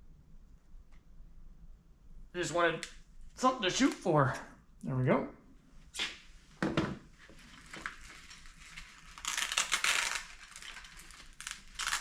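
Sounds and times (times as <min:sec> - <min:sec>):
crinkling of handled material: 0:07.2 - 0:12.0.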